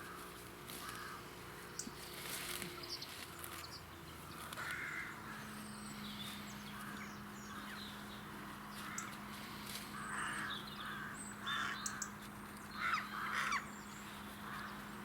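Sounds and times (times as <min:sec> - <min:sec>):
crows cawing: 0:00.0 - 0:01.7, 0:04.2 - 0:05.6, 0:06.8 - 0:07.8, 0:08.8 - 0:14.9
small birds chirping: 0:00.8 - 0:15.0.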